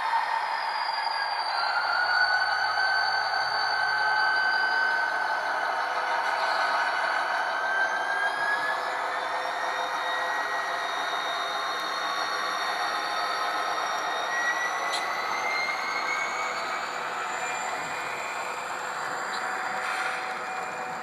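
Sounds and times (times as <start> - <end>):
turbo whine: 8.0 - 21.0
model train diesel engine sound: 8.1 - 21.0.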